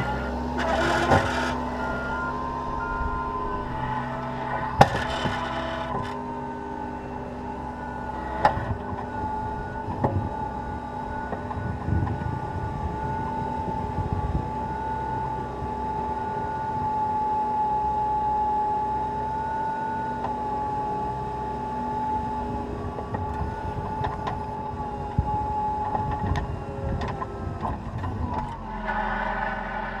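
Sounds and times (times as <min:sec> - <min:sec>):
high whine: 0:00.0 - 0:08.2
diesel engine running under load: 0:00.0 - 0:30.0.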